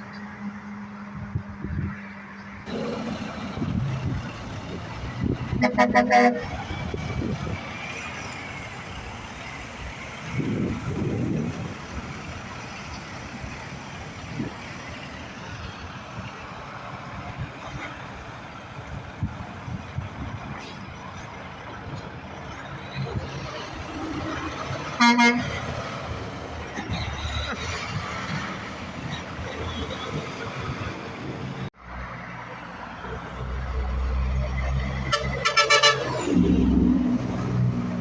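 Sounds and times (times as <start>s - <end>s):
road traffic passing: 0.0s - 38.0s
vehicle rumbling by: 2.7s - 21.2s
vehicle horn toot: 5.5s - 6.6s, 25.0s - 25.6s, 35.1s - 36.1s.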